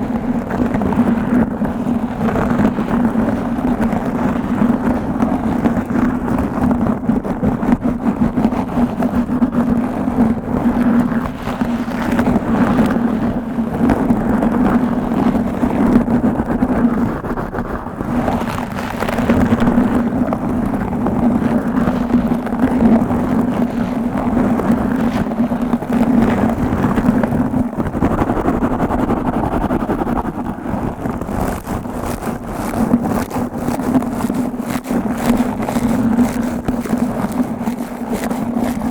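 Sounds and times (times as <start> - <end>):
scratching on microphone: 0.0 - 38.9
steady low drone: 19.3 - 21.2, 24.1 - 35.0.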